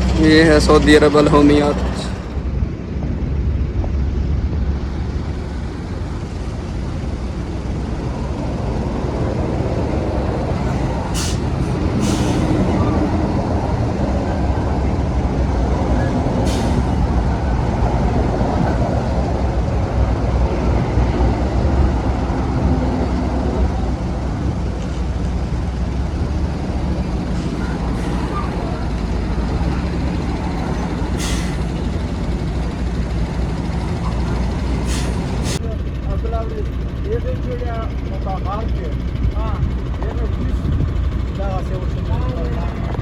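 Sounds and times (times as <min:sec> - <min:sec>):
diesel engine running: 0:00.0 - 0:43.0
air hisses: 0:11.2 - 0:12.5.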